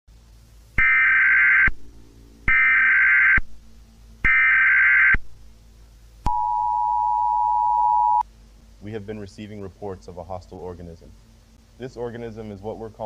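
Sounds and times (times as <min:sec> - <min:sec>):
buzzy digital data tones: 0:06.3 - 0:08.2
two-tone attention signal: 0:06.3 - 0:08.2.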